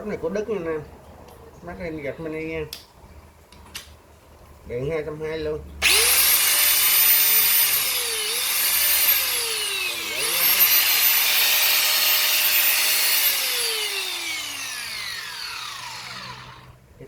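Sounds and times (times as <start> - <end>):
power tool motor whining: 5.8 - 16.8.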